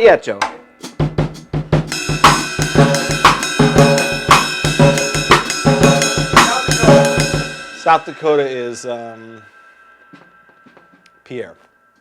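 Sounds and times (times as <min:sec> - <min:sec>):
bass drum strokes: 0:00.6 - 0:09.3
ringing cymbals: 0:00.6 - 0:12.0
snare accents: 0:04.0 - 0:07.3.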